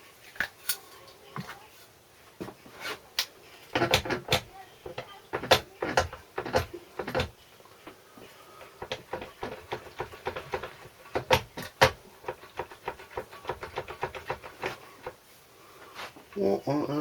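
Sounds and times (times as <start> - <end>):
metal parts knocking and clattering: 3.7 - 7.4, 8.8 - 15.2.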